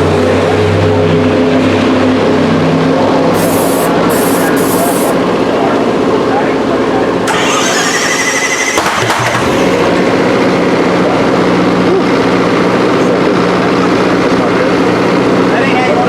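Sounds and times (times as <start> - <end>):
engine idling loudly: 0.0 - 16.0
engine starter whine: 7.2 - 12.8.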